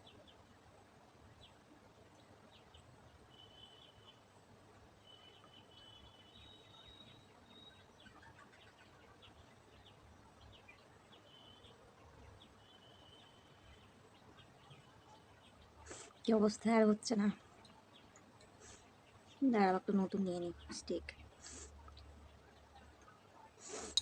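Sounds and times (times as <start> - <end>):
faint high chirps: 1.3 - 24.0.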